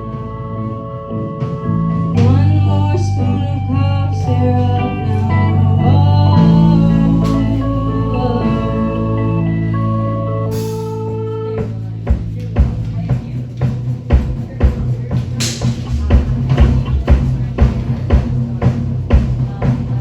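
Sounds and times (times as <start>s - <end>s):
sustained guitar chords: 0.0s - 13.0s
rock band playing live: 0.0s - 13.8s.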